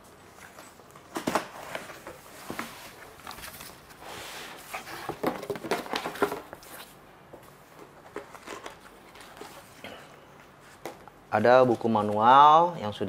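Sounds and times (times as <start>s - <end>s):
packaging rustling: 7.8s - 9.8s.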